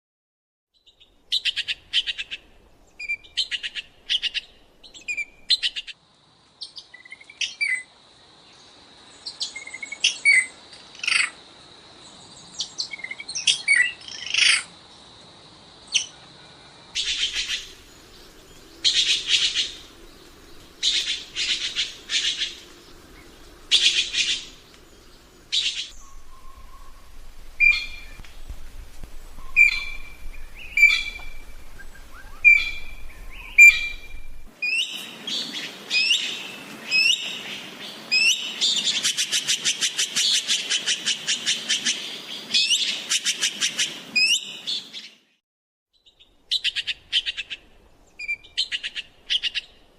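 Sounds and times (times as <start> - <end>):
songbirds chattering: 17.0 - 43.0.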